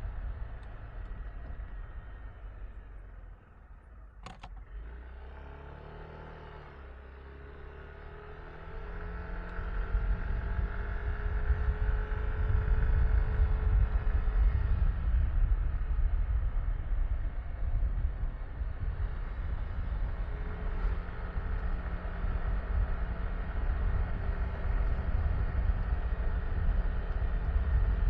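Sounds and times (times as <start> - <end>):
wind rumble on microphone: 7.6 - 28.0.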